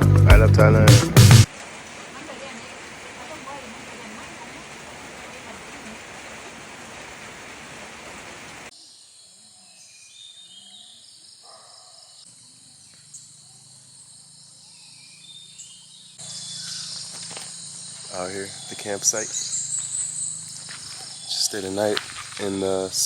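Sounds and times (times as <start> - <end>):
rushing hiss: 0.9 - 8.9, 16.2 - 23.0
birds whistling: 9.7 - 12.1, 14.5 - 23.0.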